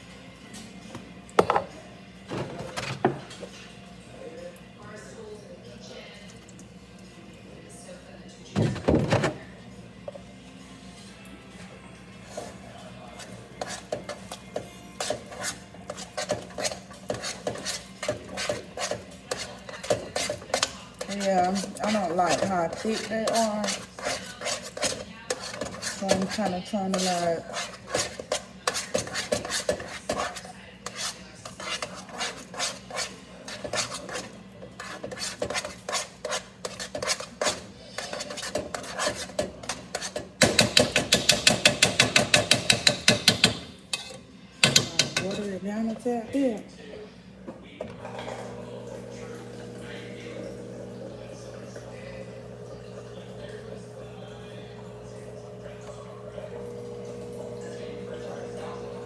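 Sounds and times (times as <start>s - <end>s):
spoon scraping a pot: 12.2s - 46.0s.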